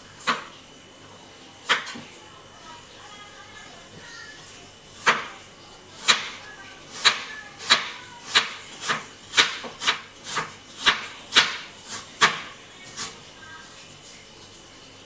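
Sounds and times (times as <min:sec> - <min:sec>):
knife slicing apple on cutting board: 0:07.0 - 0:13.2.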